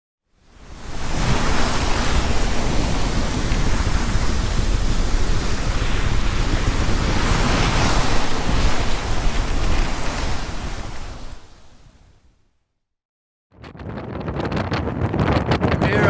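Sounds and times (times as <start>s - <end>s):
sea waves rushing: 0.4s - 12.1s, 15.6s - 16.0s
wind buffeting microphone: 0.6s - 12.2s, 13.6s - 16.0s.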